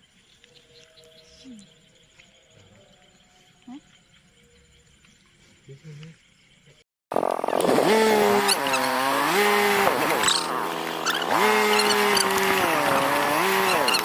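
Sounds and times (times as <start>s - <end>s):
small engine revving: 7.1s - 14.0s.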